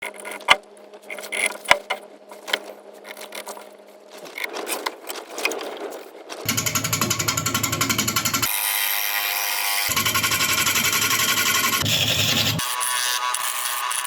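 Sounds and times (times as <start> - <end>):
power tool chattering: 6.5 - 14.0.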